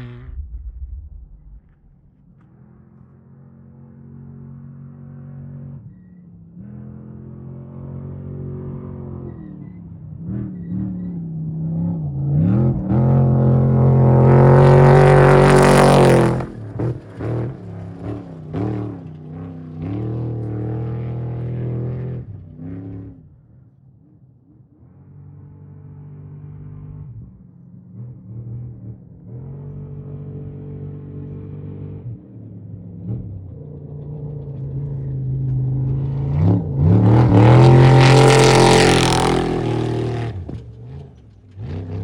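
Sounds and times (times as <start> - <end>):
engine throttle blips: 0.0 - 3.1
race vehicle engine at high revs: 6.4 - 23.4, 24.5 - 42.0.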